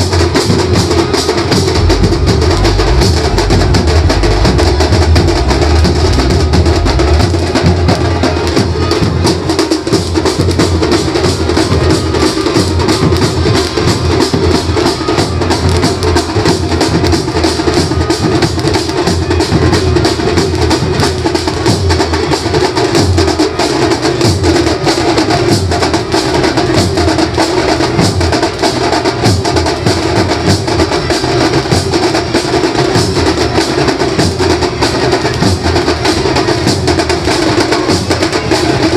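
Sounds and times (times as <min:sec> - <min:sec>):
band playing festival music: 0:00.0 - 0:38.9
driving drumming: 0:00.0 - 0:38.9.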